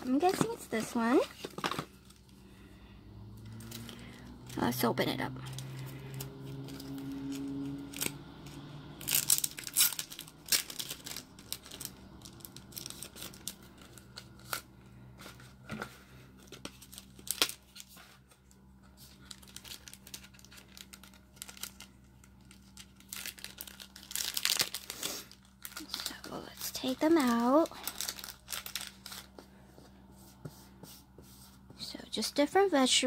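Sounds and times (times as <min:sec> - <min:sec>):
packaging tearing and crinkling: 0:05.5 - 0:14.6, 0:16.5 - 0:18.0, 0:19.1 - 0:29.3.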